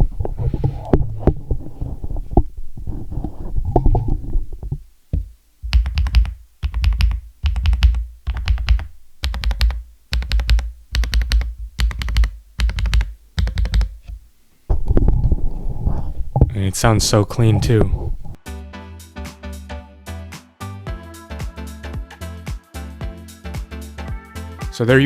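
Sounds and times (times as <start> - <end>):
mechanical keyboard typing: 5.7 - 14.1.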